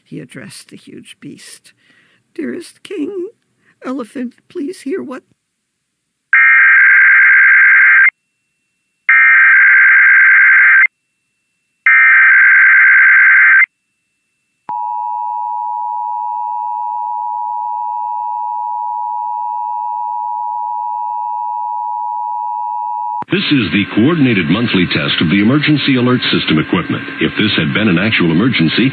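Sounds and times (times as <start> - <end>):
digital data bursts: 11.9 - 13.7.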